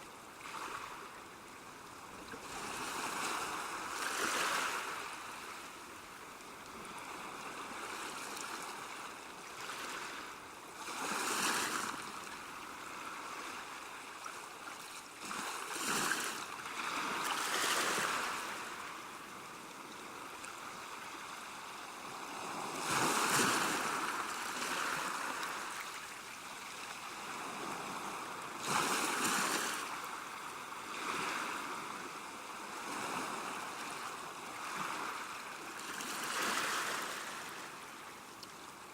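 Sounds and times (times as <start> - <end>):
sea waves washing onto shore: 21.4 - 38.0.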